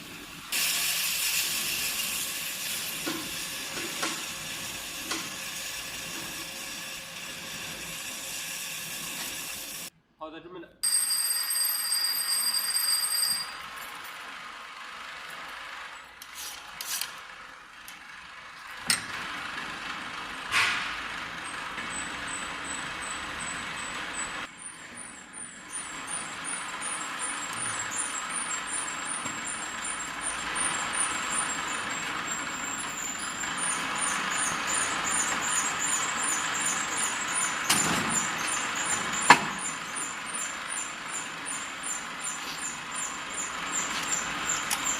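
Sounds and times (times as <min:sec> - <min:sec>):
machine hiss: 0:00.5 - 0:09.9.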